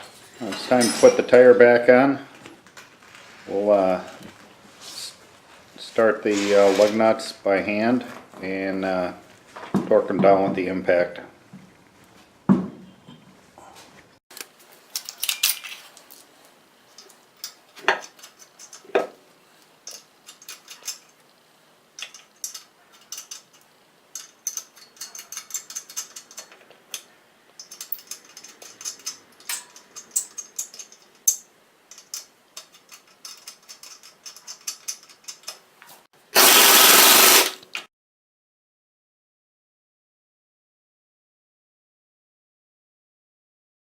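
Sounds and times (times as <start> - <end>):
metal clinks of wheel and lug nuts: 19.8 - 21.2, 22.0 - 27.0, 27.6 - 35.6
air impact wrench burst: 36.4 - 37.6.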